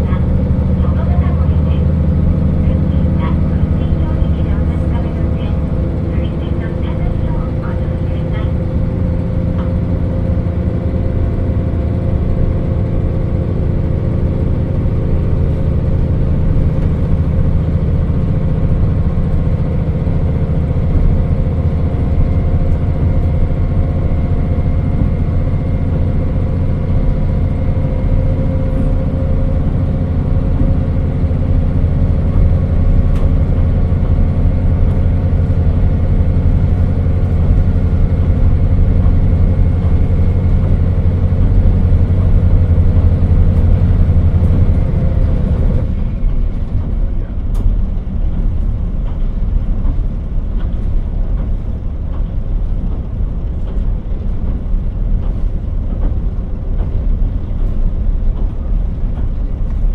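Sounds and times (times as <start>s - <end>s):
diesel railcar engine drone: 0.0s - 59.9s
train running noise: 0.0s - 59.9s.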